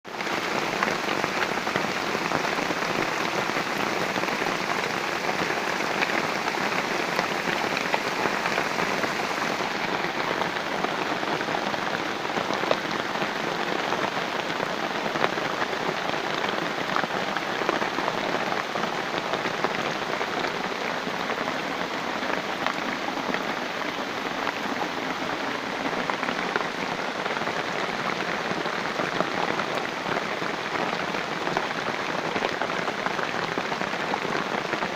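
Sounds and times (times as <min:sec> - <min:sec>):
heavy rain on leaves: 0:00.0 - 0:34.9.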